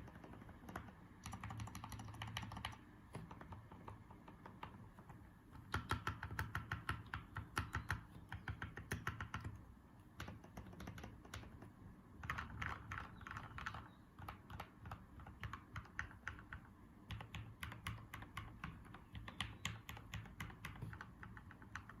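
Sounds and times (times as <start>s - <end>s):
typing on mechanical keyboard: 0.0s - 9.6s, 10.2s - 22.0s.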